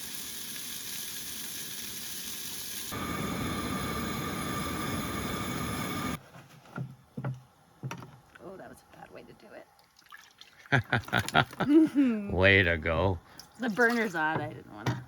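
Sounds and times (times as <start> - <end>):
food sizzling in frying pan: 0.0 - 6.2.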